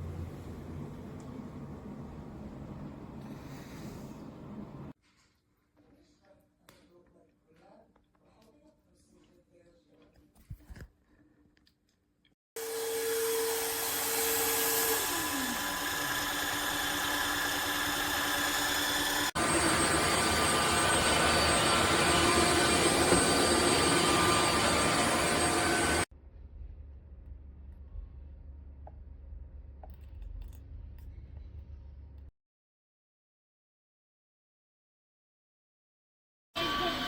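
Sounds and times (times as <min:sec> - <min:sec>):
wet-dry vacuum motor running: 0:12.6 - 0:26.1.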